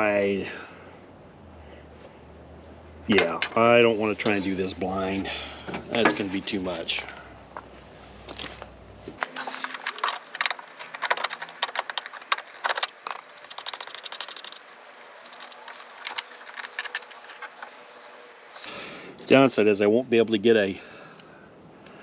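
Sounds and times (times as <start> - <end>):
metal parts clinking and rattling: 9.2 - 18.7.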